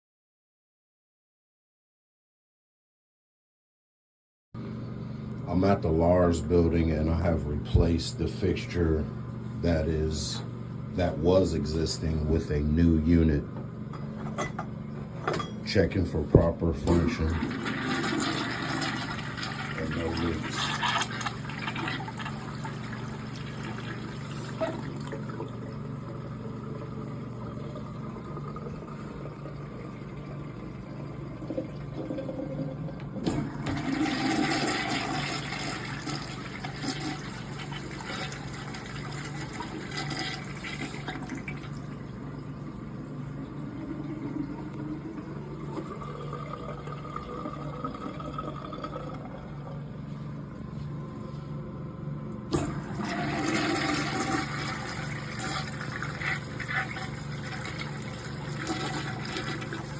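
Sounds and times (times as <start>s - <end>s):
urinal flush water rushing: 16.9s - 50.0s, 52.5s - 59.9s.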